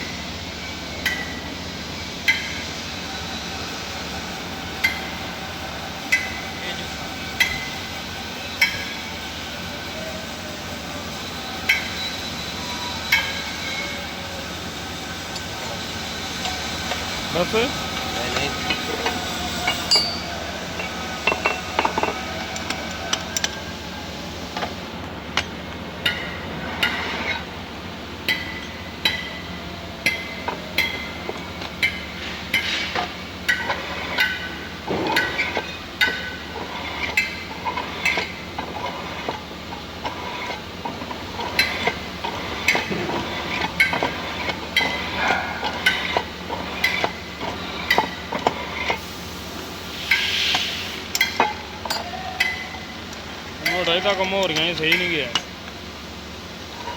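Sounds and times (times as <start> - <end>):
machine running: 0.0 - 56.9
sharp ringing metallic clinks: 19.6 - 20.3.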